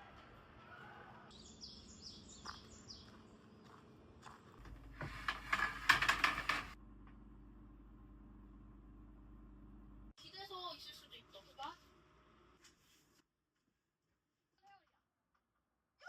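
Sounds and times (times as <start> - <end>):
small bird chirping: 1.3 - 3.8
rattling and rustling: 4.6 - 6.8.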